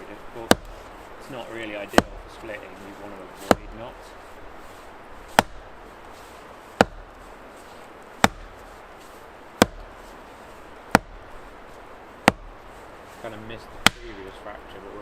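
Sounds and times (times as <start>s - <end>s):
axe knocking into wood: 0.5s - 0.8s, 3.5s - 3.8s, 5.3s - 5.6s, 6.8s - 7.1s, 8.2s - 8.6s, 9.6s - 9.9s, 10.9s - 11.2s, 12.2s - 12.5s, 13.8s - 14.2s.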